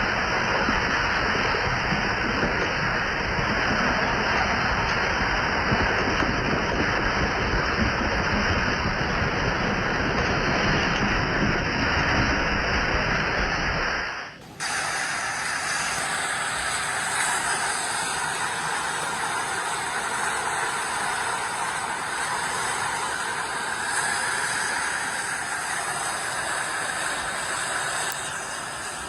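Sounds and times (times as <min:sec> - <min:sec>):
floodwater rushing: 0:00.0 - 0:29.0.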